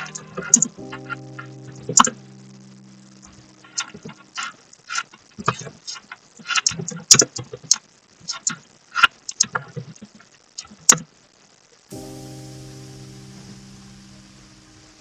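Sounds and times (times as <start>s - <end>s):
sustained musical chord: 0.0s - 4.4s, 11.9s - 15.0s.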